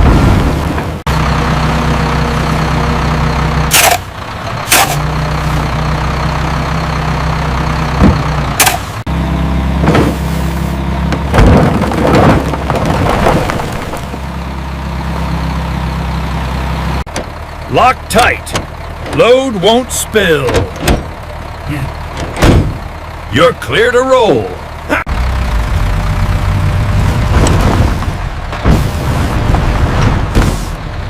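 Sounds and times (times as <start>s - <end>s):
heavy machinery engine running: 0.0s - 31.0s.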